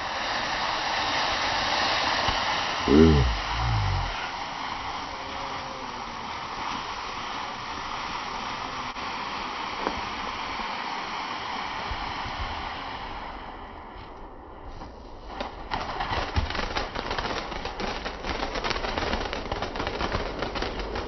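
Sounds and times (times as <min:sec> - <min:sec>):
ground firework hissing: 0:00.0 - 0:14.0.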